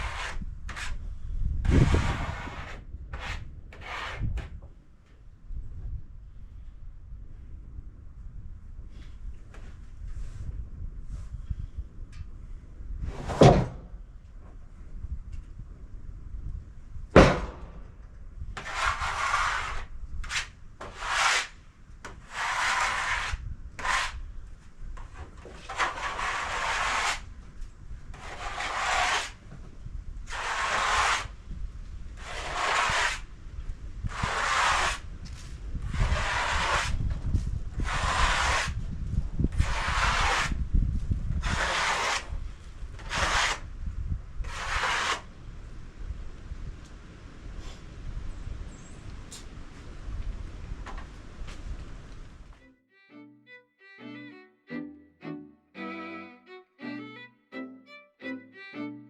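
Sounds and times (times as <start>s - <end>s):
scraping strokes on wood: 0.0s - 1.0s, 1.8s - 4.5s, 18.6s - 24.2s, 25.0s - 27.3s, 28.1s - 29.4s, 30.3s - 31.4s, 32.2s - 33.3s, 34.1s - 35.1s, 35.9s - 37.1s, 37.8s - 38.8s, 39.5s - 40.6s, 41.4s - 42.4s, 43.0s - 43.7s, 44.4s - 45.3s
sharp knock: 17.2s - 17.8s.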